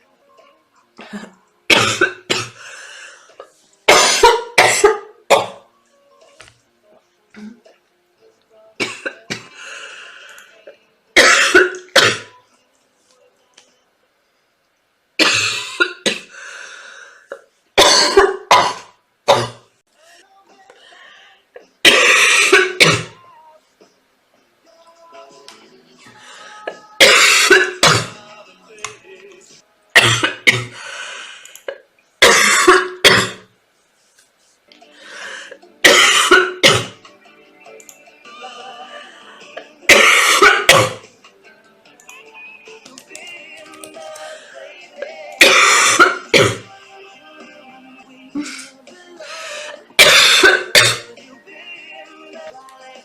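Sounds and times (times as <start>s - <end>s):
girl coughing hard: 1.2s - 2.6s, 3.9s - 5.6s, 11.2s - 12.3s, 15.2s - 16.3s, 17.8s - 19.7s, 21.8s - 23.2s, 27.0s - 28.2s, 30.0s - 30.8s, 32.2s - 33.5s, 35.8s - 37.0s, 39.9s - 41.0s, 45.4s - 46.7s, 50.0s - 51.1s
drawn-out breath: 2.6s - 3.5s, 9.5s - 10.6s, 16.3s - 17.4s, 20.7s - 21.4s, 30.8s - 31.6s, 34.8s - 35.6s, 44.2s - 44.7s, 48.4s - 49.9s.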